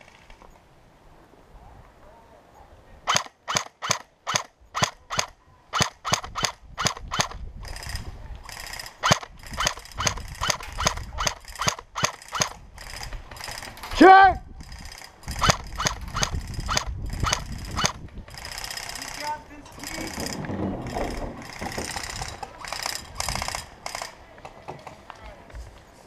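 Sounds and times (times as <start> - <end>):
airsoft rifle shots: 3.1 - 13.8, 15.3 - 19.1.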